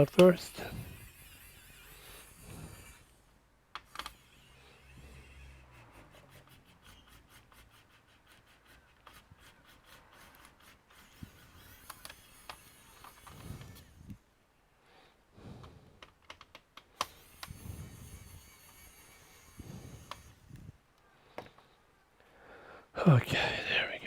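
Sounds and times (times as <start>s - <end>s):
plastic clicks and rubbing: 3.7s - 4.2s, 15.6s - 17.6s.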